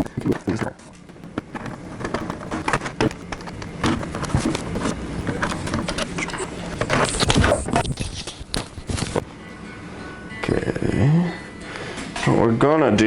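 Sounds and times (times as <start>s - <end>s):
plastic clicks and scrapes: 0.0s - 9.3s.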